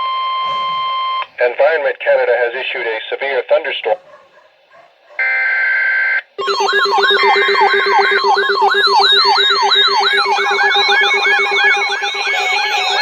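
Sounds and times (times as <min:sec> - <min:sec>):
electronic alarm siren sweeps: 0:05.2 - 0:13.0
digital data tones: 0:06.4 - 0:13.0.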